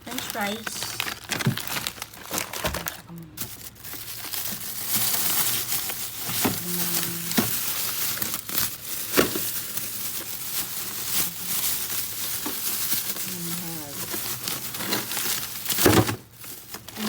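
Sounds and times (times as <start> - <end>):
plastic packaging crinkling: 0.0 - 17.0.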